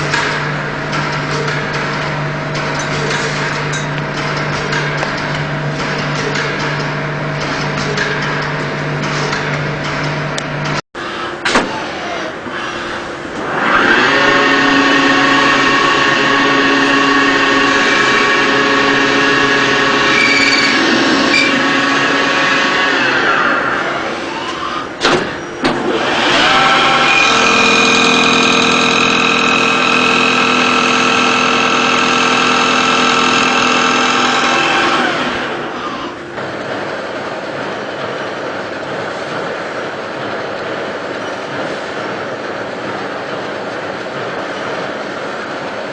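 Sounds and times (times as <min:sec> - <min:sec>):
lathe spindle whine: 0:11.9 - 0:24.9, 0:25.9 - 0:36.1.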